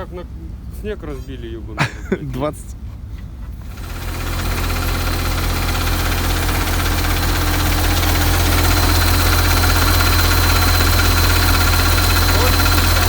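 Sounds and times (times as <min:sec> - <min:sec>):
diesel truck engine idling: 0:03.4 - 0:13.0.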